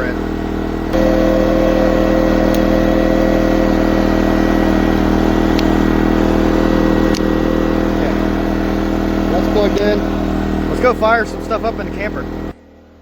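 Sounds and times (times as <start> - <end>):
generator engine running: 0.0 - 13.0
sharp click: 2.5 - 2.7.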